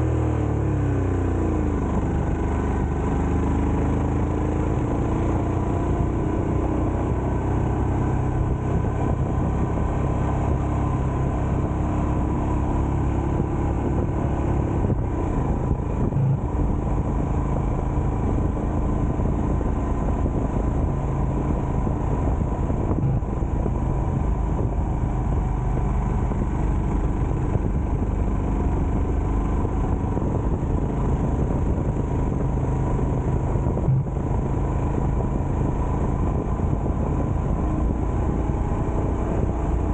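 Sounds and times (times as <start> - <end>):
vehicle engine and road noise: 0.0 - 39.9.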